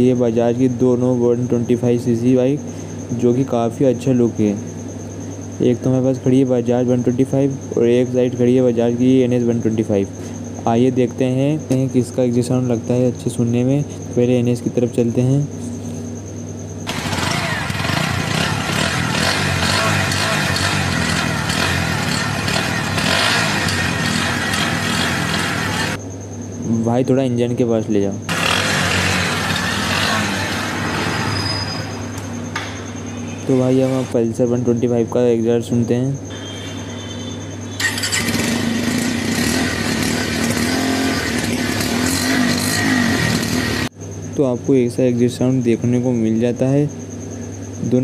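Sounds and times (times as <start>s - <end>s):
motorcycle engine idling: 16.9s - 26.0s, 37.8s - 43.9s.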